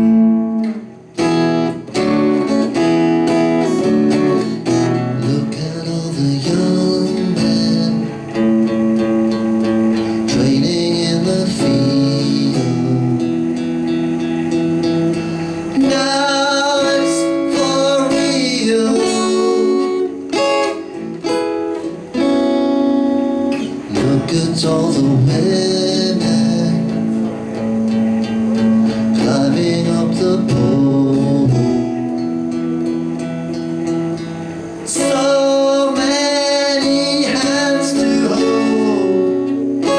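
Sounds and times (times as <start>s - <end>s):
acoustic guitar strummed and picked: 0.0s - 39.9s
person singing: 4.3s - 8.7s, 10.0s - 13.6s, 15.8s - 20.7s, 23.8s - 27.6s, 28.9s - 32.1s, 34.8s - 39.9s.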